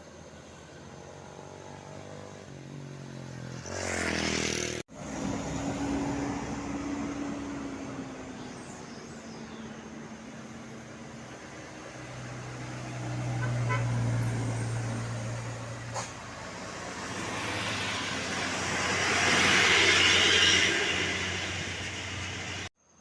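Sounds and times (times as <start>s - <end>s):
vehicle passing with tyre and wind rush: 0.0s - 22.7s.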